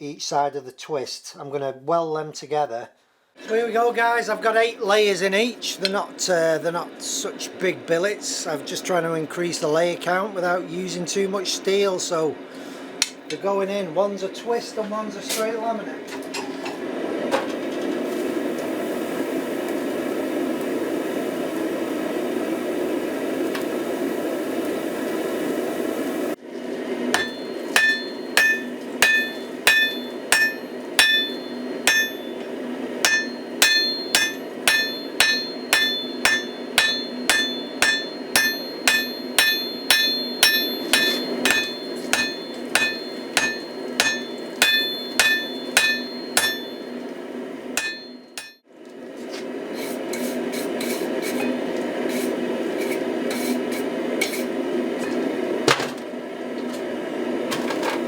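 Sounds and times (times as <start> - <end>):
hammer striking metal on anvil: 27.1 - 46.9, 47.8 - 48.6.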